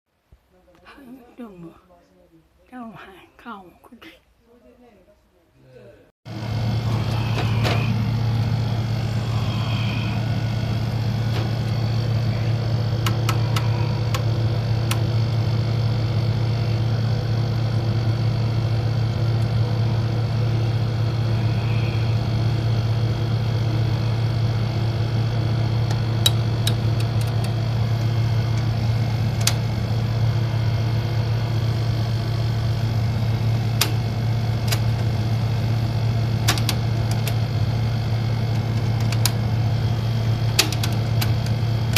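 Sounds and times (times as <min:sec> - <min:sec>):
video recorder humming: 0:06.3 - 0:41.9
mechanism clicks: 0:36.4 - 0:37.4, 0:40.5 - 0:41.9.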